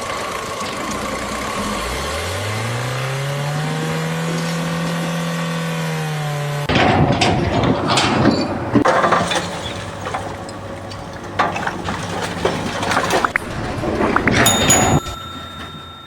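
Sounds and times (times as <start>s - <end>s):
mechanical knocks and clinks: 14.5s - 16.0s.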